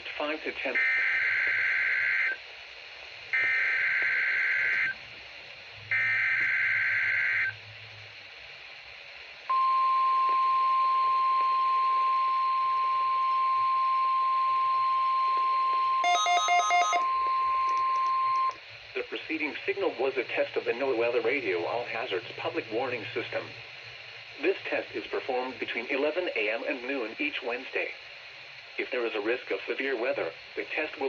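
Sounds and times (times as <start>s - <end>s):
steady alert alarm tone: 16.0s - 17.6s.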